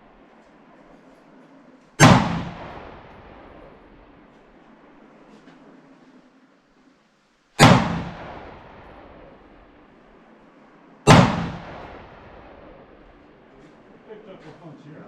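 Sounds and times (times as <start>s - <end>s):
gunshots with echoing tail: 2.0s - 4.2s, 7.6s - 9.8s, 11.1s - 13.4s.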